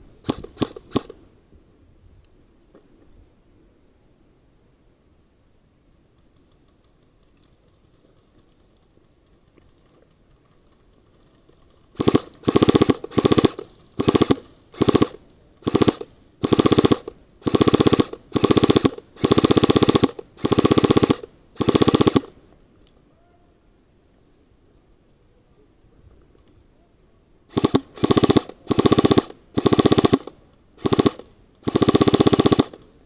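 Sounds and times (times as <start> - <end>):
airsoft rifle automatic bursts: 0.2 - 1.2, 9.7 - 22.4, 27.5 - 32.9.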